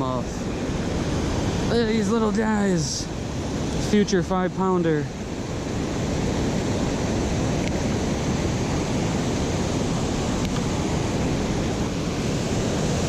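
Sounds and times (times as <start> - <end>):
river water pouring over spillway: 0.0 - 13.0.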